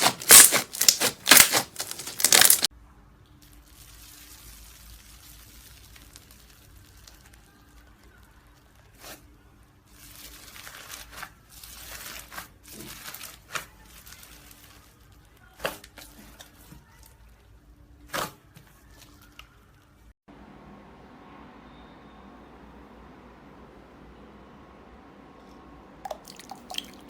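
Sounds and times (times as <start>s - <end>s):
slime popping: 0.0s - 2.7s
slime sticky crackling: 0.0s - 2.7s.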